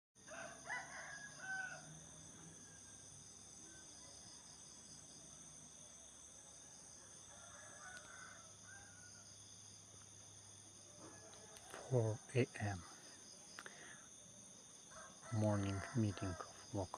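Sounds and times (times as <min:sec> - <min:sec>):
rooster crowing: 0:00.2 - 0:03.4, 0:06.7 - 0:09.6, 0:10.8 - 0:13.0, 0:14.8 - 0:16.9
high drone of insects: 0:00.2 - 0:16.9.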